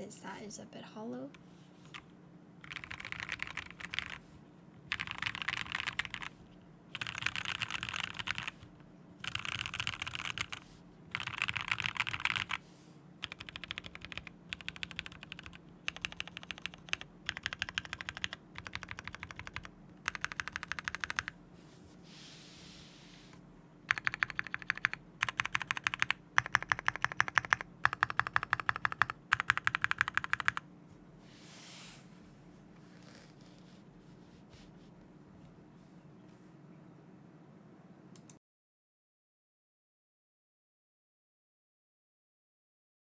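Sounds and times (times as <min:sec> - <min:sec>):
mechanical keyboard typing: 0:02.6 - 0:04.2, 0:04.9 - 0:12.6, 0:13.2 - 0:21.3, 0:23.9 - 0:30.6.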